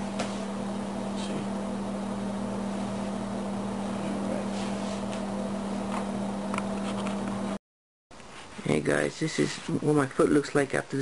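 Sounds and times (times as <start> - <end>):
low mechanical hum: 0.0 - 7.6.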